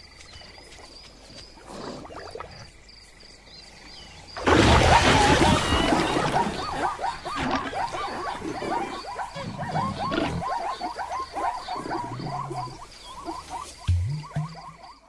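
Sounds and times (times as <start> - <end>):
chorus of animal cries: 4.6 - 13.8.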